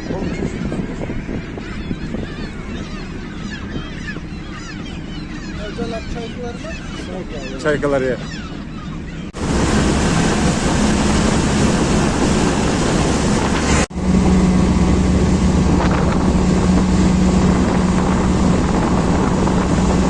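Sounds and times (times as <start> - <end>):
wind on microphone: 0.0 - 4.4, 9.3 - 20.0
motorboat engine humming: 0.0 - 20.0.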